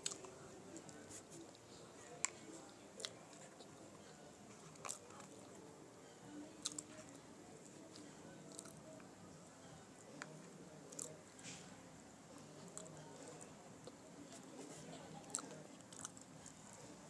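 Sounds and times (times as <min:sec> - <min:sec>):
person biting and chewing: 0:08.5 - 0:08.8.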